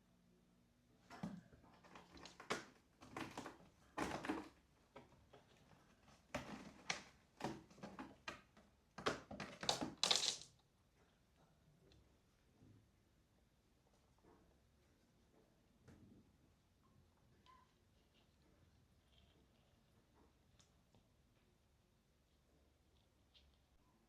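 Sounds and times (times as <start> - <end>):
kittens playing with toys: 1.0 - 10.5.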